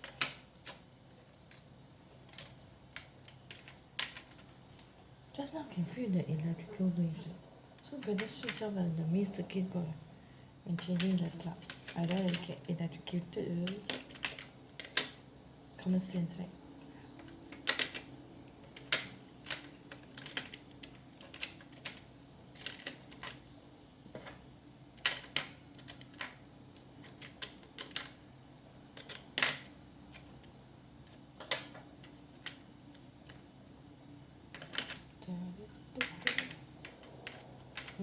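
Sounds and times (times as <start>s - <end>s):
metal tools clicking and clinking: 9.8s - 12.8s, 13.5s - 15.2s, 16.7s - 24.4s, 25.0s - 32.6s, 34.4s - 38.0s.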